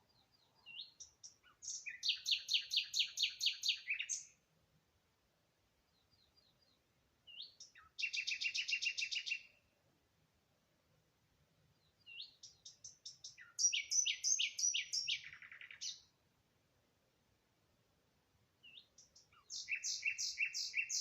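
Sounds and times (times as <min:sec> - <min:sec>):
songbird singing a trill: 0:00.0 - 0:04.4, 0:05.8 - 0:09.7, 0:11.7 - 0:16.2, 0:18.6 - 0:21.0.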